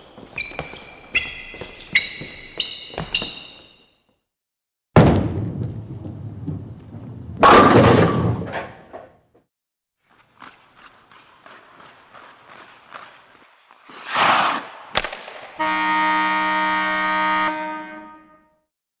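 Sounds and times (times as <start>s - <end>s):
loud steady horn blast: 15.6s - 18.7s.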